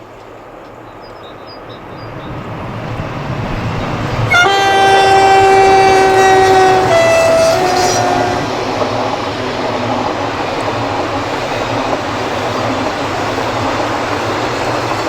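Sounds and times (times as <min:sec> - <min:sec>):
electric train rumble: 0:00.0 - 0:15.0
train horn blast: 0:04.1 - 0:09.0.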